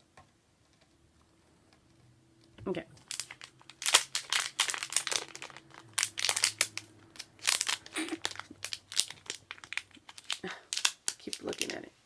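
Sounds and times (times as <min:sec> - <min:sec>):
packaging crinkling and rustling: 0:03.0 - 0:11.9.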